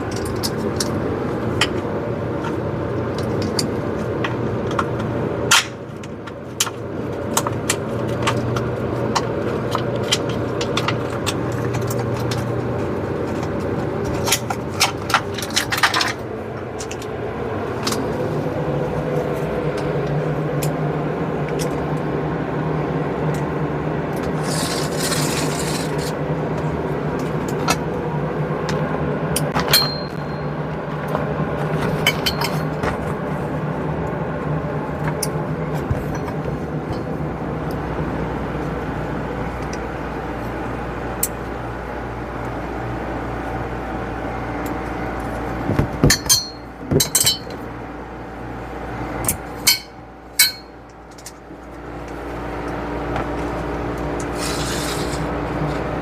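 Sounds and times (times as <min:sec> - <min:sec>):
steady background hum: 0:00.0 - 0:56.0
small metal hardware clinking: 0:29.6 - 0:30.5, 0:46.0 - 0:47.6, 0:49.2 - 0:51.4.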